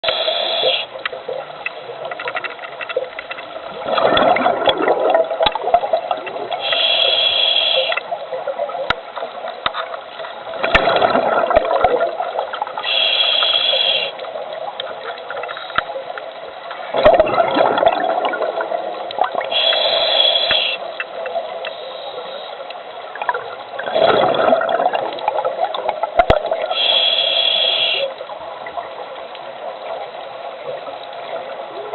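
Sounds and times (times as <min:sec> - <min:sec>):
hissing inhale through regulator: 0:00.0 - 0:01.0, 0:06.5 - 0:08.1, 0:12.8 - 0:14.3, 0:19.4 - 0:21.0, 0:21.6 - 0:22.7, 0:26.7 - 0:28.2
exhaled bubbles gurgling: 0:00.0 - 0:22.1, 0:23.0 - 0:31.9
underwater background: 0:00.0 - 0:31.9.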